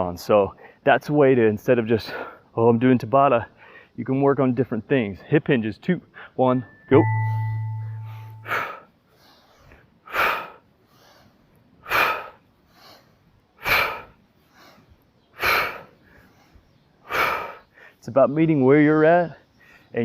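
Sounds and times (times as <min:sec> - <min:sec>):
bell-like tone: 0:06.6 - 0:08.6.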